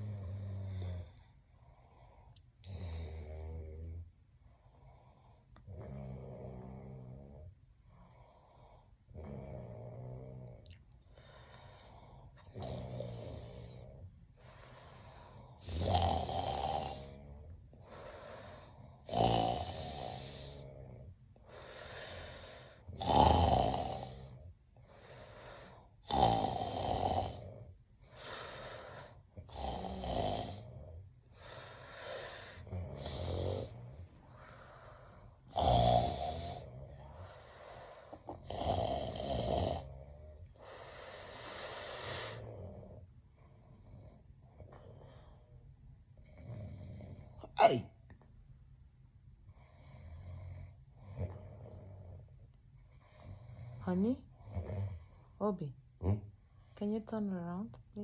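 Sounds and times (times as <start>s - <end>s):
soft breathing: 7.4s - 15.8s, 16.9s - 19.1s, 20.0s - 23.0s, 24.4s - 26.0s, 30.5s - 39.2s, 39.8s - 47.5s
man snoring: 12.5s - 14.0s, 15.5s - 21.0s, 21.6s - 24.4s, 26.0s - 42.8s, 46.4s - 47.8s.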